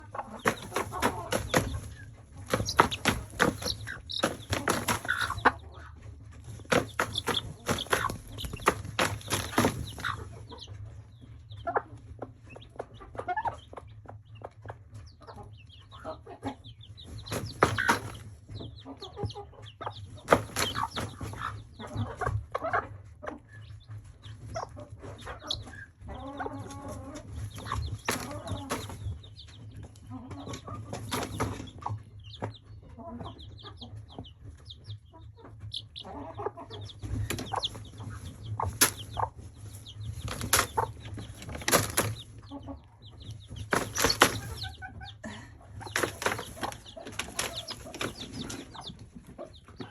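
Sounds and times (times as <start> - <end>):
chicks peeping: 0.0 - 49.9
hen clucking: 0.0 - 49.9
scratching banging and scraping: 0.3 - 10.4, 17.2 - 18.6, 20.2 - 21.6, 26.6 - 32.0, 35.6 - 45.1, 45.8 - 49.9.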